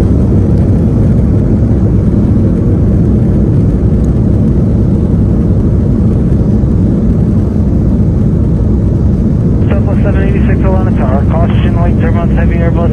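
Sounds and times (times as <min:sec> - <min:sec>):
jet engine rumble in cabin: 0:00.0 - 0:12.9.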